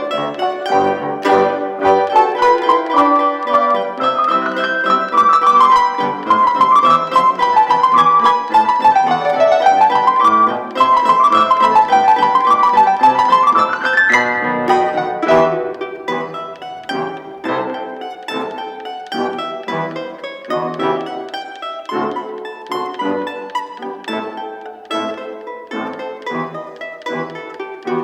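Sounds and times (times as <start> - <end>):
solo piano playing: 0.0 - 18.1.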